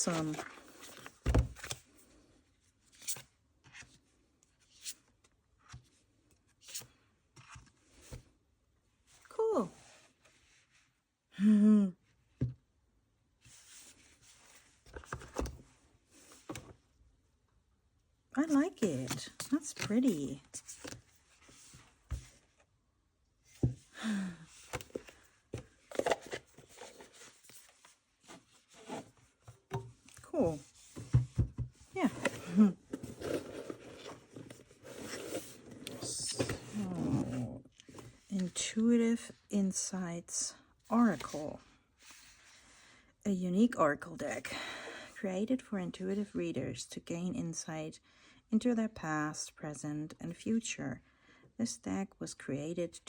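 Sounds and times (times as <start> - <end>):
rustles and scrapes of packaging: 0.0 - 2.1, 24.6 - 29.6, 30.5 - 38.4.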